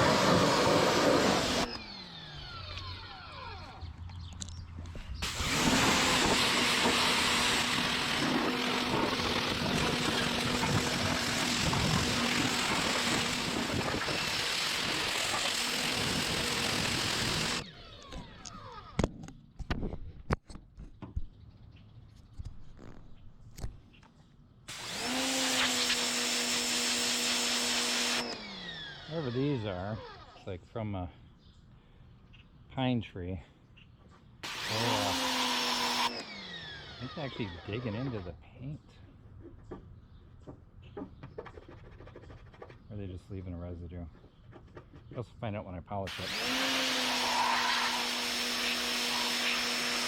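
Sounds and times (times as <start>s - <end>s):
pressure washer motor hum: 0.0s - 3.8s, 5.2s - 18.3s, 34.4s - 38.2s, 46.1s - 50.0s.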